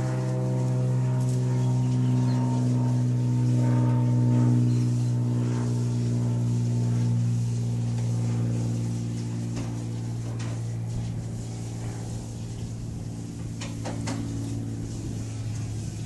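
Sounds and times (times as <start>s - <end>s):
engine hum: 0.0s - 16.0s.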